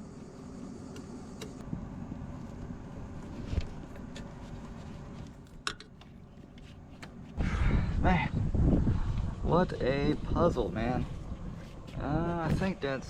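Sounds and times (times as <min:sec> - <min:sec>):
steady low rumble: 0:00.0 - 0:13.0
engine parts clicking: 0:02.3 - 0:07.4.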